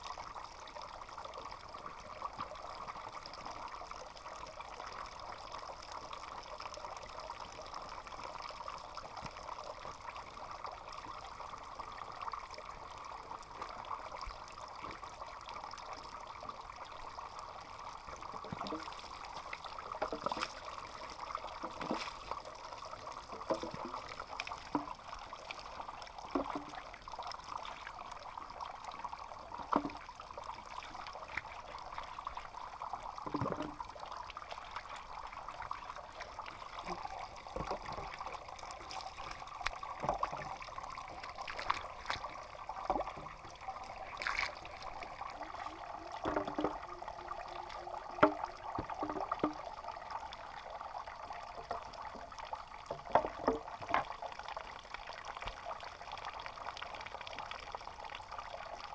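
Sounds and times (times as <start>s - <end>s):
water trickling: 0.0s - 58.9s.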